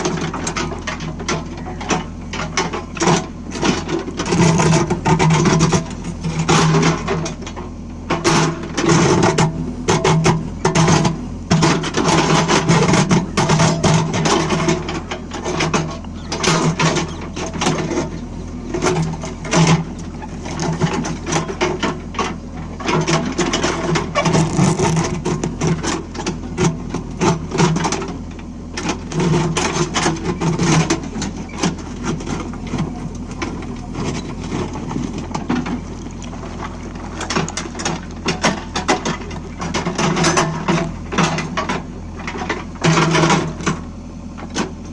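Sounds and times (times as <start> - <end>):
bucket clanks and scrapes: 0.0 - 43.8
diesel engine running under load: 0.0 - 44.9.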